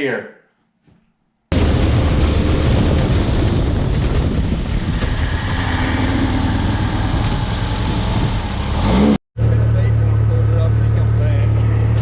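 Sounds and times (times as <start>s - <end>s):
rush of noise: 1.5s - 9.0s
engine running: 1.6s - 12.0s.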